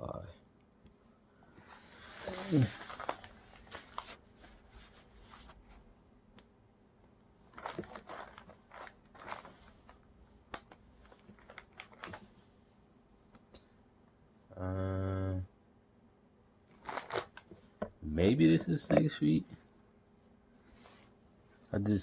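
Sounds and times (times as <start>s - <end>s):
cable being handled: 2.3s - 5.7s, 7.5s - 12.4s, 16.7s - 17.9s.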